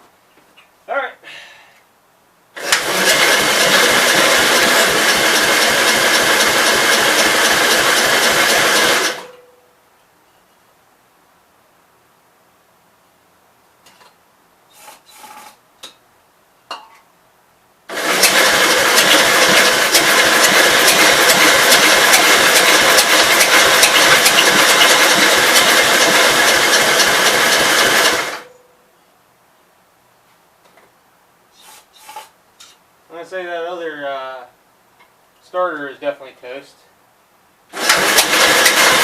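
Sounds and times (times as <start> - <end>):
electric starter cranking engine: 2.6 - 9.3, 17.9 - 28.5, 37.7 - 39.0.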